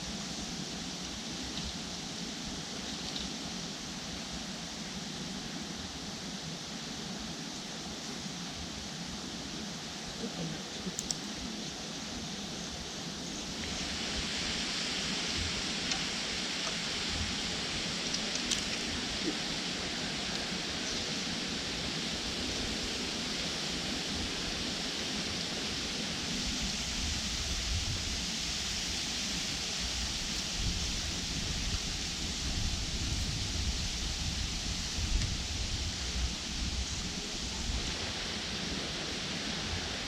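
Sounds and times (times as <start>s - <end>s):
wind rumble on microphone: 0.0s - 40.0s
river water rushing: 12.8s - 32.9s.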